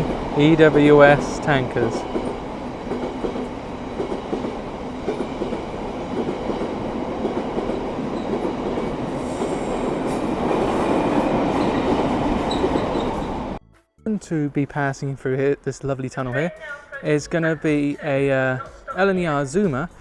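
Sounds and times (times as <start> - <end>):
train wheels clattering on rails: 0.0 - 13.6.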